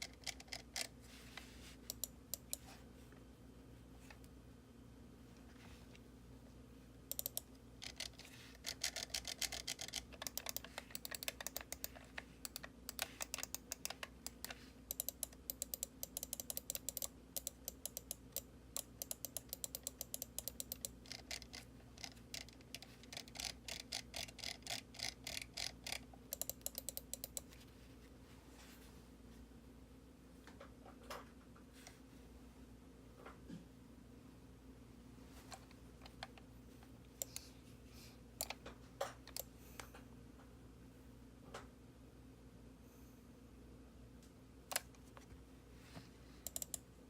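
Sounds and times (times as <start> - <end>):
mouse buttons clicking: 37.2 - 37.5.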